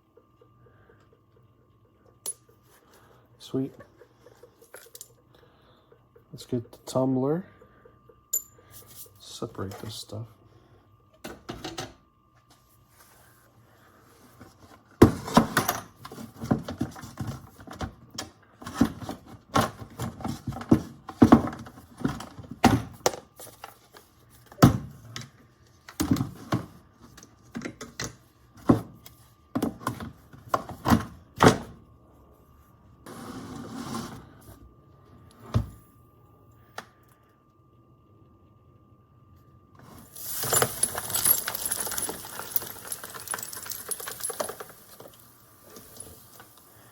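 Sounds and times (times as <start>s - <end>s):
shaking rattle: 40.1s - 46.6s
brass casings clattering: 40.2s - 44.8s.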